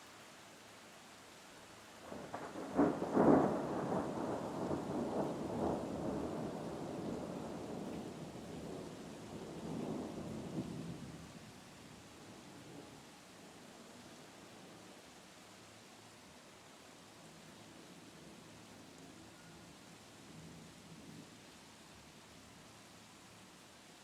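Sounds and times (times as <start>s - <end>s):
rain hissing: 1.6s - 23.6s
rolling thunder: 2.1s - 11.1s.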